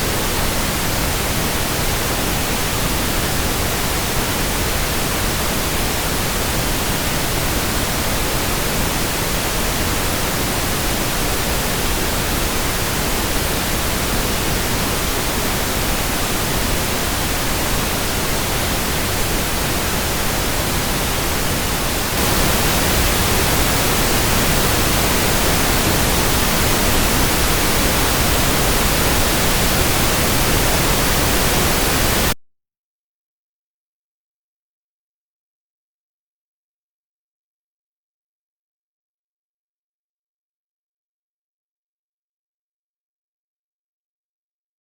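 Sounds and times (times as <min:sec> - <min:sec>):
pink noise hiss: 0:00.0 - 0:32.4.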